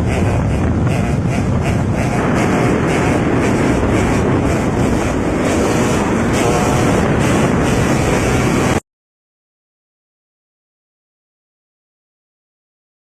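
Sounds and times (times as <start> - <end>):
vehicle rumble: 0.0 - 8.8
wind buffeting microphone: 0.0 - 8.8.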